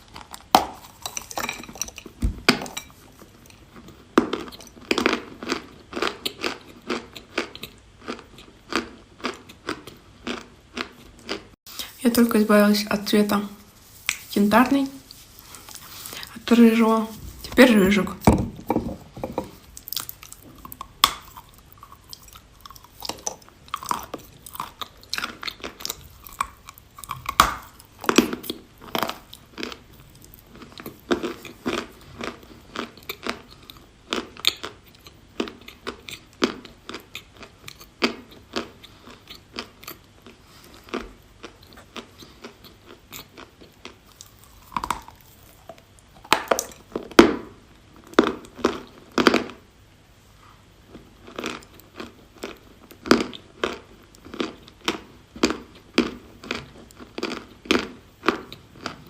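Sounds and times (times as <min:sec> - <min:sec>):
chalk crunching when chewed: 0:02.7 - 0:11.9, 0:13.9 - 0:16.4, 0:19.6 - 0:47.0.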